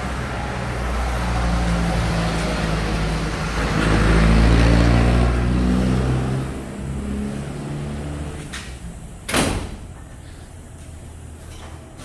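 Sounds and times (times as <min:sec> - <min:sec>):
vehicle engine passing by: 0:00.0 - 0:08.6.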